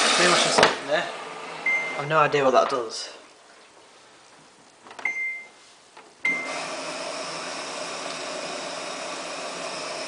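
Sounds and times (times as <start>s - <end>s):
washing machine beep: 1.6s - 2.1s, 5.0s - 5.6s, 6.2s - 6.7s.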